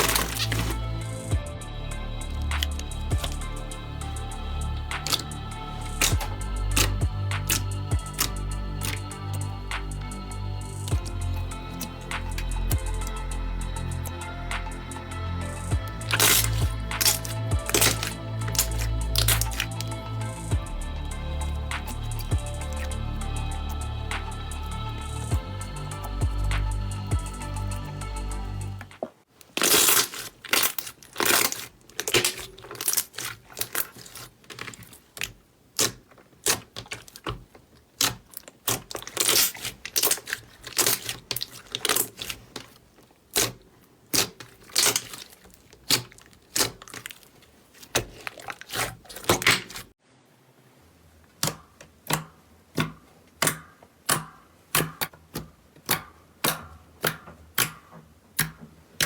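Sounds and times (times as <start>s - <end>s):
slime squeezed and poked: 0.0s - 1.0s, 2.3s - 13.3s, 15.6s - 20.5s, 29.5s - 37.4s, 38.0s - 49.9s.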